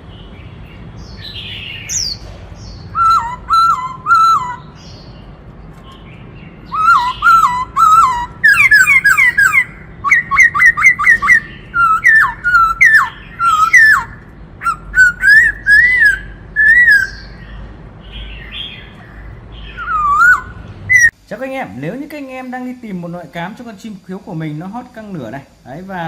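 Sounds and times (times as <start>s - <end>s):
bird singing whistled phrases: 1.2s - 2.2s, 2.8s - 5.1s, 6.7s - 17.4s, 18.2s - 21.1s.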